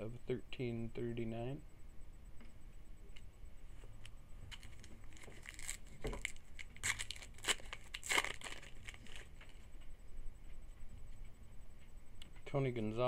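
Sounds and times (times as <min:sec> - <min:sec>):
wrapper tearing and crinkling: 0:04.5 - 0:09.6.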